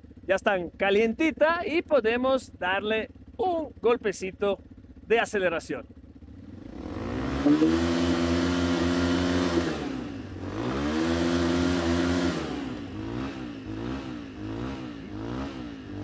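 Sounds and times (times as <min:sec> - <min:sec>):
motorcycle engines revving: 0:06.0 - 0:16.0.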